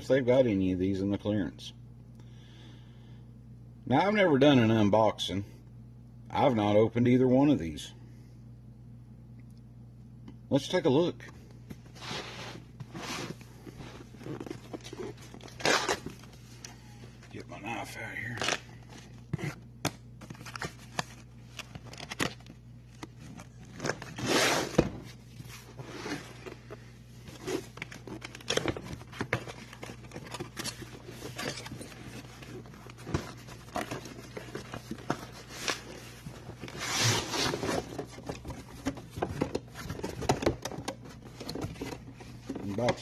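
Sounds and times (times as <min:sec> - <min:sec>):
steady low hum: 0:00.0 - 0:43.0
cardboard tearing and rustling: 0:12.0 - 0:16.4, 0:20.2 - 0:43.0.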